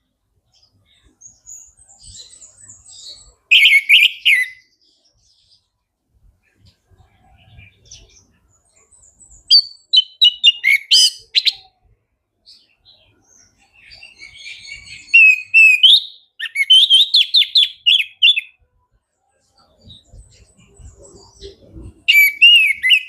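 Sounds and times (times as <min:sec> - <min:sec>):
thrush singing whistled notes: 0:01.0 - 0:04.8, 0:09.1 - 0:11.7, 0:13.4 - 0:18.6, 0:20.0 - 0:23.0.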